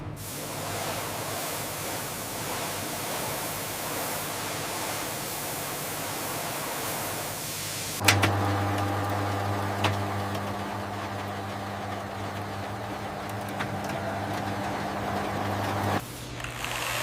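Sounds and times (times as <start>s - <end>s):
steady rushing hiss: 0.2s - 8.0s
factory machinery humming: 8.0s - 16.6s.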